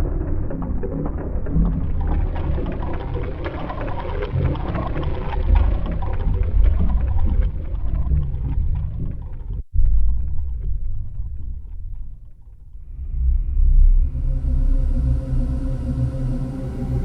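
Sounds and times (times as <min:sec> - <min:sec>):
deep synthesizer rumble: 0:00.0 - 0:17.0
synthesizer surf-like noise wash: 0:12.9 - 0:17.0.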